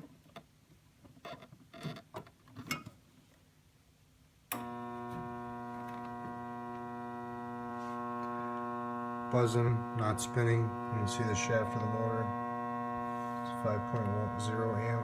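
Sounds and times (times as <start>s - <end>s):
motor buzzing steadily: 4.6s - 15.0s.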